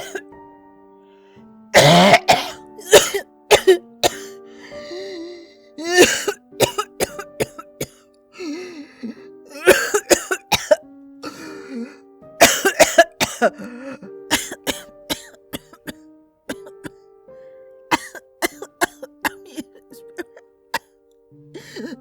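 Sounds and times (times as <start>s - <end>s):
woman coughing: 0.0s - 0.2s, 1.8s - 4.3s, 5.8s - 8.9s, 9.5s - 11.6s, 12.4s - 13.7s, 14.3s - 15.8s, 17.9s - 20.9s, 21.6s - 22.0s
soft background music: 0.0s - 22.0s.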